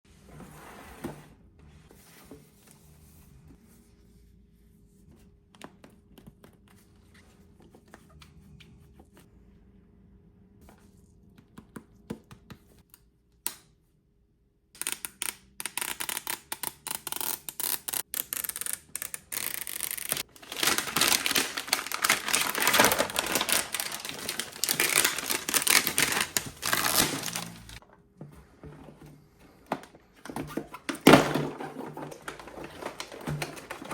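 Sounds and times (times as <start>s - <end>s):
packaging crinkling and tearing: 17.6s - 27.8s.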